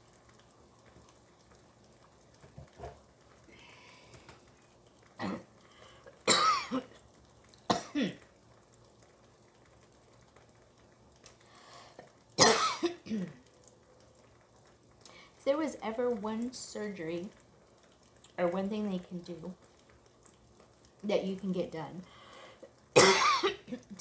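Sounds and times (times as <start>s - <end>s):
woman clearing her throat: 5.2s - 5.5s, 6.3s - 6.9s, 23.0s - 24.0s
woman coughing: 6.3s - 6.9s, 12.4s - 13.3s, 23.0s - 23.8s.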